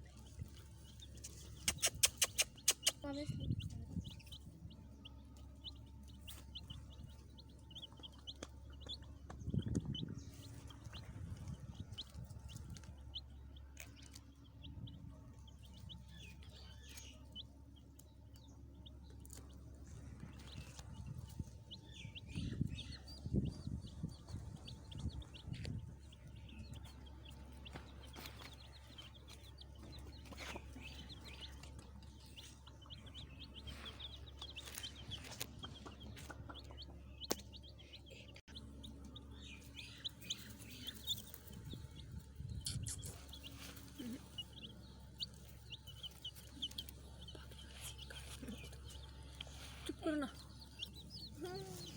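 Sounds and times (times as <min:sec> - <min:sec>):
baby chicks peeping: 0:00.0 - 0:51.9.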